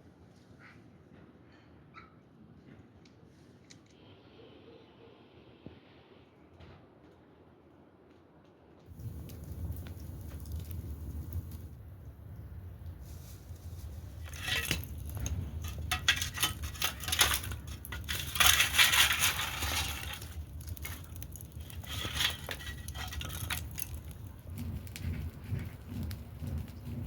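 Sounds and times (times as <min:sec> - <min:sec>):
crunching and clinking handling: 0:13.8 - 0:25.0.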